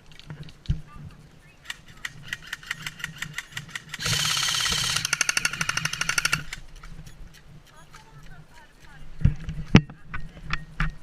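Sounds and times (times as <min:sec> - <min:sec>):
airsoft guns firing full auto: 0:01.7 - 0:06.6.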